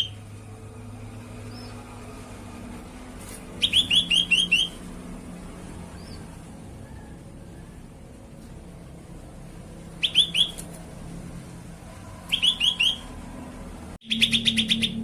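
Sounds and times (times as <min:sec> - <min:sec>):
bulbul calling: 0:00.0 - 0:00.2, 0:03.6 - 0:04.9, 0:10.0 - 0:10.7, 0:12.3 - 0:13.1, 0:14.0 - 0:15.0
low steady hum: 0:00.0 - 0:12.4.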